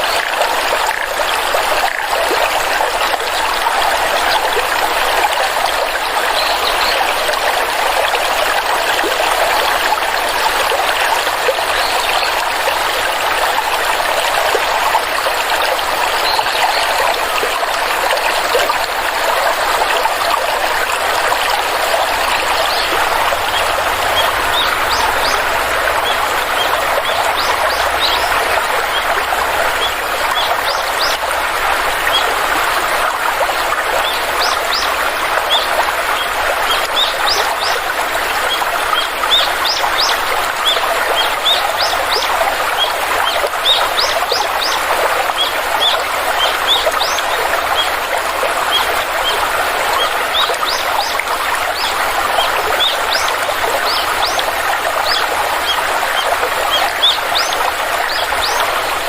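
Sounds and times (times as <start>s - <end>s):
stream water flowing: 0.0s - 59.0s
birds chirping: 21.4s - 32.8s, 50.0s - 59.0s.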